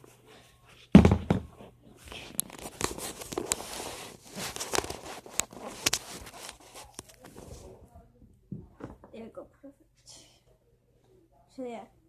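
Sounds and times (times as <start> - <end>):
rustling and crinkling: 0.0 - 8.0.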